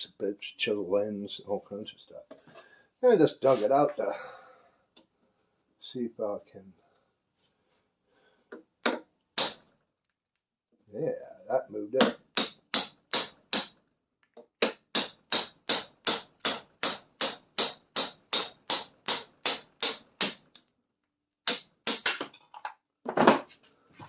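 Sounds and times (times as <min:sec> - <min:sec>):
hammer striking steel punch: 0:09.4 - 0:09.7, 0:12.0 - 0:13.8, 0:14.6 - 0:20.6, 0:21.4 - 0:22.3.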